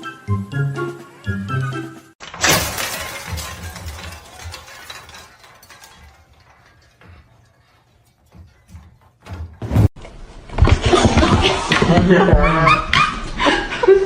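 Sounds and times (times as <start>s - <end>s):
pieces clattering and tinkling: 2.2s - 9.2s
loud shattering crash: 2.2s - 9.9s.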